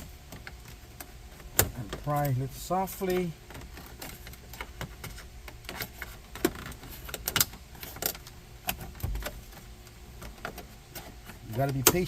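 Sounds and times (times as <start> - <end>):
plastic trim clicks and creaks: 10.2 - 12.0.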